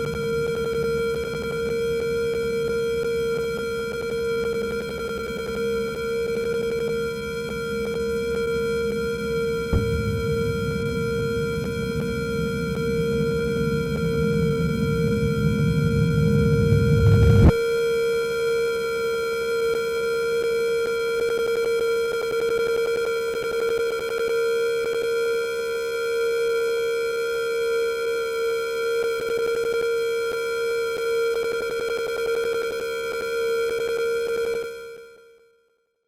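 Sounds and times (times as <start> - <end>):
low rumble: 9.7 - 17.6.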